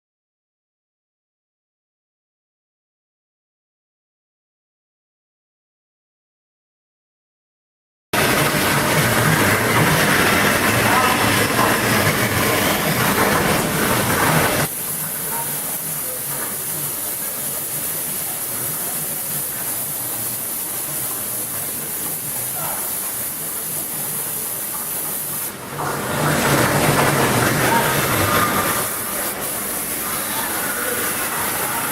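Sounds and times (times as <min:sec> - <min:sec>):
plasma torch hissing: 0:08.2 - 0:25.6, 0:26.9 - 0:31.9.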